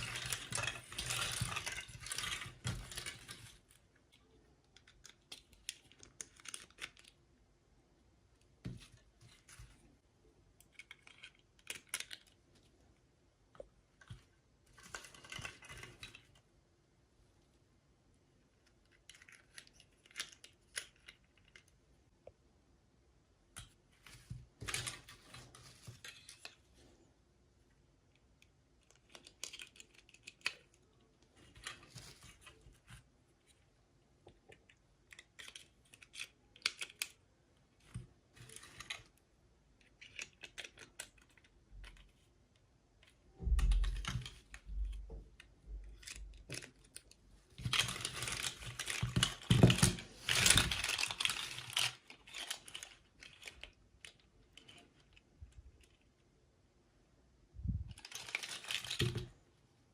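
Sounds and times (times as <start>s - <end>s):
packaging crinkling and rattling: 0.0s - 3.8s, 46.0s - 54.8s, 57.9s - 59.4s
plastic pieces clicking and tapping: 10.6s - 12.4s, 18.6s - 21.8s, 28.1s - 31.8s, 34.3s - 37.2s, 39.8s - 42.2s, 43.0s - 56.0s.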